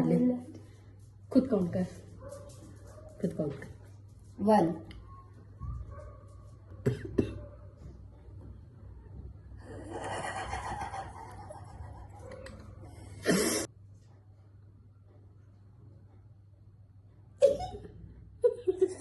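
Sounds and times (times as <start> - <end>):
breathy laughter: 9.6 - 12.3
person sneezing: 13.2 - 13.7.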